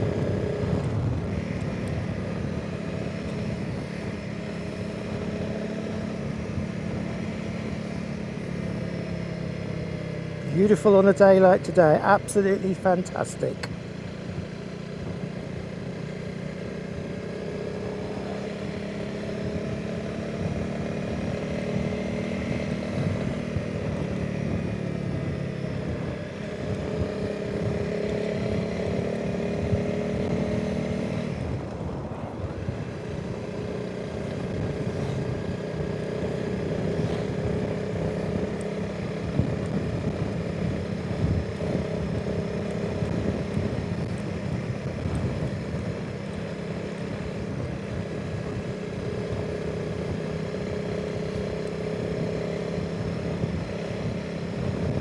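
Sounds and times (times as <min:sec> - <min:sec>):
motorcycle engine revving: 0:00.0 - 0:55.0
wind noise on microphone: 0:39.0 - 0:46.2, 0:52.8 - 0:55.0.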